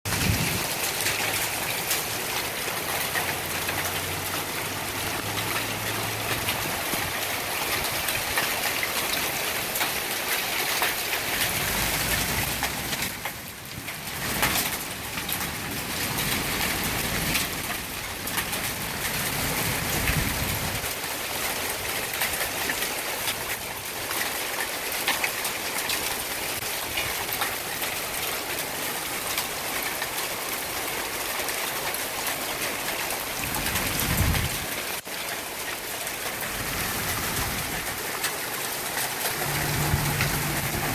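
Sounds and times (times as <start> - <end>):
heavy rain with hail: 0.0 - 40.9
low thunder rumble: 39.4 - 40.9.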